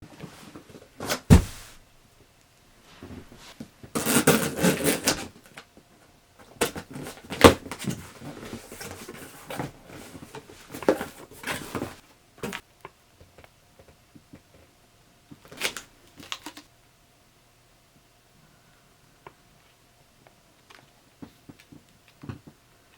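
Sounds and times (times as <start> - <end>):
packaging rustling and scraping: 0.2 - 1.8, 2.9 - 5.6, 6.4 - 12.6.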